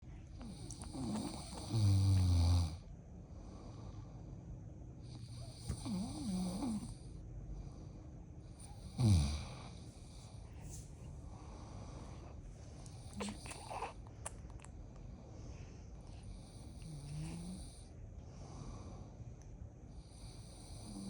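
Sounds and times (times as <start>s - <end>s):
man snoring: 0.4s - 2.8s, 5.2s - 7.1s, 8.7s - 9.8s, 16.4s - 17.9s, 20.1s - 21.0s.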